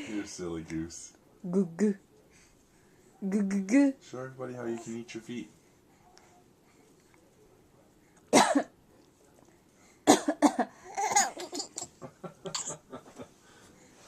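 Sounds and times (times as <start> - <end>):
person coughing: 8.4 - 8.7, 10.1 - 11.4, 12.5 - 12.8.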